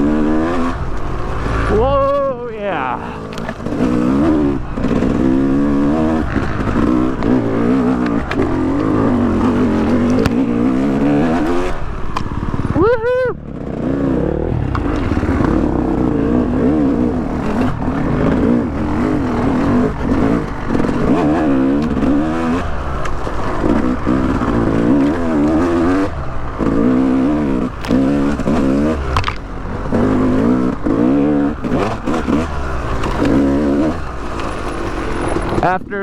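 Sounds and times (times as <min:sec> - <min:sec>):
dirt bike engine revving: 0:00.0 - 0:36.0.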